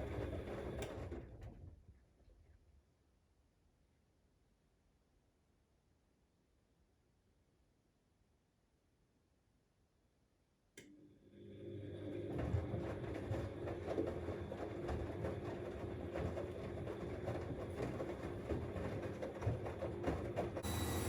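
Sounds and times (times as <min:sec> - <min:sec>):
washing machine motor humming: 0:11.4 - 0:21.0.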